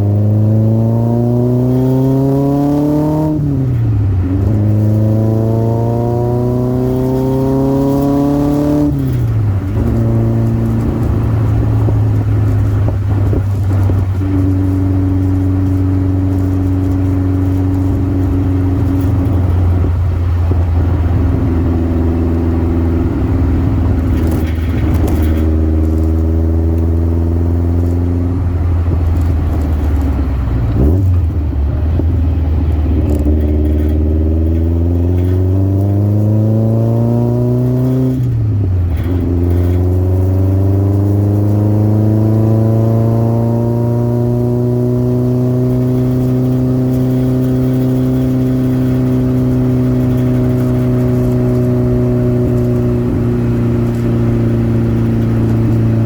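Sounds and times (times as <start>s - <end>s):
car engine accelerating through gears: 0.0s - 56.0s.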